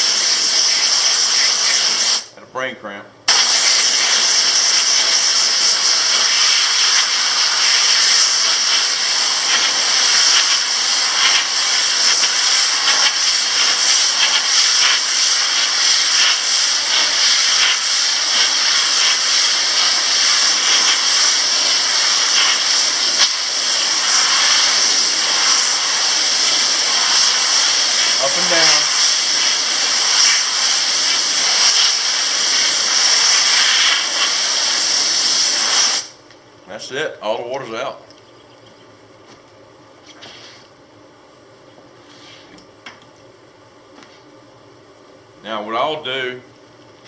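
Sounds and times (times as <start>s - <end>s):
compressed air blow gun hissing: 0.0s - 2.3s, 3.3s - 36.2s.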